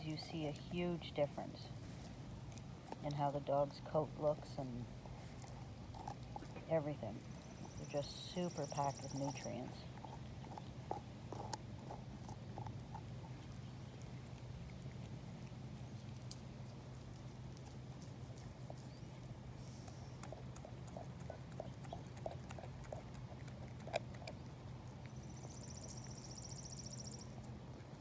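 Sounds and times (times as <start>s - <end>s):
steady low hum: 0.0s - 28.0s
teeth knocking on bone: 9.9s - 13.4s.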